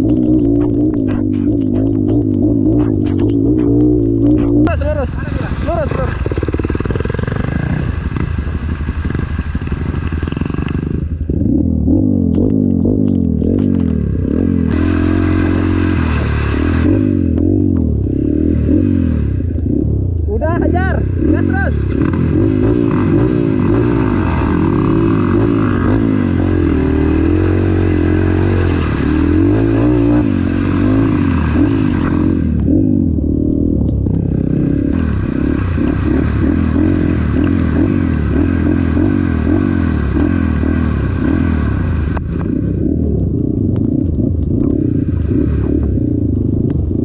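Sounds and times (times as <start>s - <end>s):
motorcycle engine revving: 0.0s - 47.0s
hiss and clatter: 6.5s - 10.9s.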